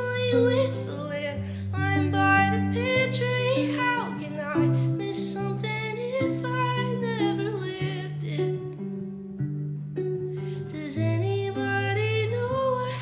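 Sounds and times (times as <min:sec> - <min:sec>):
person singing wordless melody: 0:00.0 - 0:08.9.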